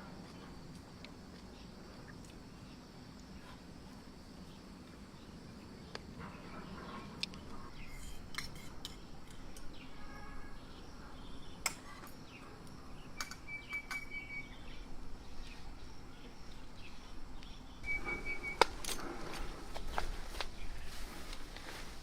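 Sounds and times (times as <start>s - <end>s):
bird chirps: 6.2s - 18.9s
utensils clinking and tapping: 7.9s - 9.7s
whistled note: 17.8s - 18.8s.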